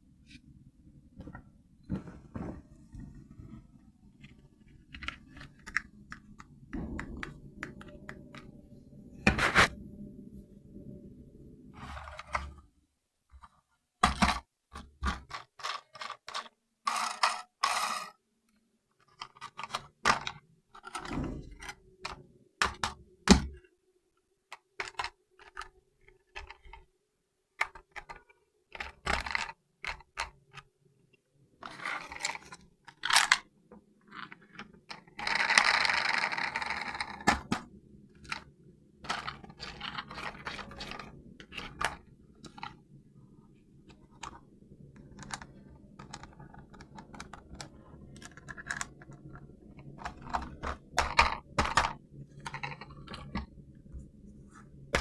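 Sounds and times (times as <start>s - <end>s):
plastic toy tank clicks and knocks: 45.0s - 53.5s.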